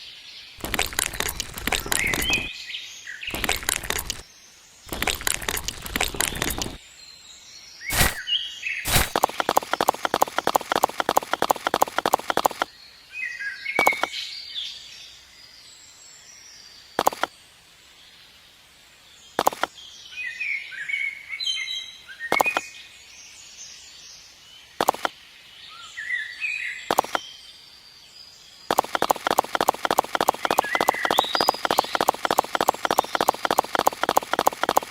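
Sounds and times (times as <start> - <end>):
sharp clicks: 0.6 - 2.5, 3.3 - 4.2, 4.9 - 6.8, 7.9 - 8.2, 8.9 - 12.7, 13.8 - 14.1, 17.0 - 17.3, 19.4 - 19.7, 22.3 - 22.6, 24.8 - 25.1, 26.9 - 27.2, 28.7 - 34.9
birds chirping: 0.6 - 2.6, 3.2 - 4.3, 4.9 - 6.8, 7.8 - 12.7, 13.8 - 14.1, 28.7 - 34.9.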